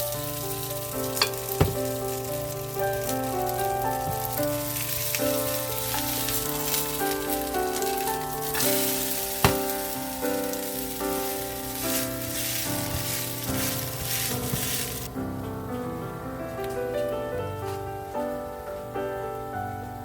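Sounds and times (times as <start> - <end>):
food sizzling in a frying pan: 0.0 - 15.1
background music: 0.0 - 20.0.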